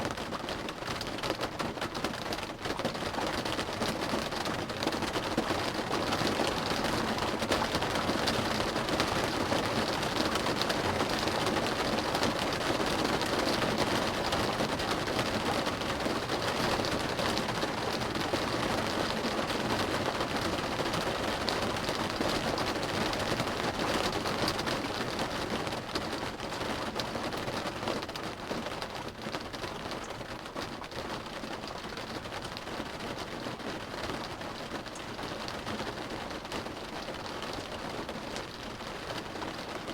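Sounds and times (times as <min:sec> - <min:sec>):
rain drumming on car roof: 0:00.0 - 0:39.9.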